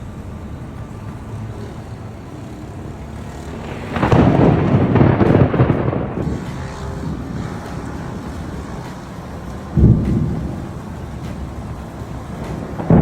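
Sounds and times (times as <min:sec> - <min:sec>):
thunder rumble: 0:00.0 - 0:13.0
crackling lightning crash: 0:03.0 - 0:13.0.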